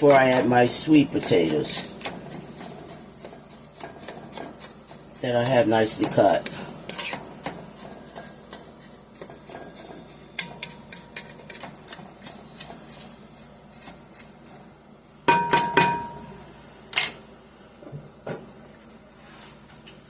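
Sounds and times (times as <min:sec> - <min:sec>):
spoon stirring in pan: 0:00.0 - 0:14.7.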